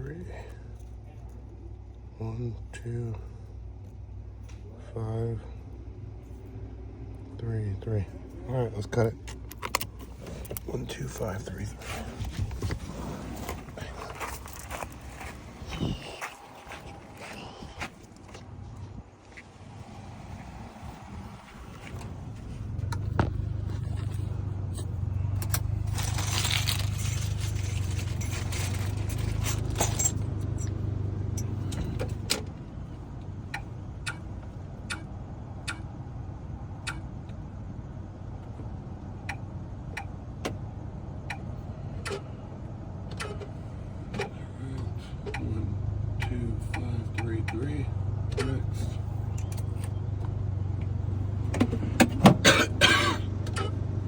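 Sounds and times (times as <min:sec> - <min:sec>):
grinding: 0:21.6 - 0:32.3.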